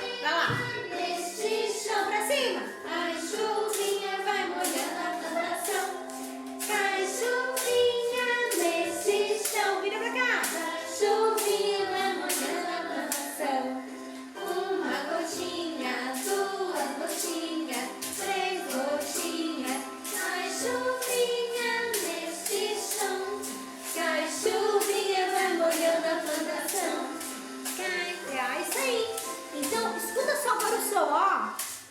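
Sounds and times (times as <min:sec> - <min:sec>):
children singing: 0:00.0 - 0:30.1
percussive beat: 0:16.2 - 0:31.9.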